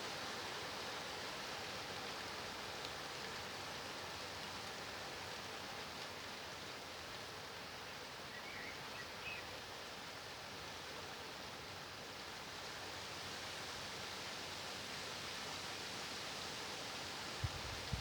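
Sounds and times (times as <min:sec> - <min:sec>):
rain falling steadily: 0:00.0 - 0:18.0.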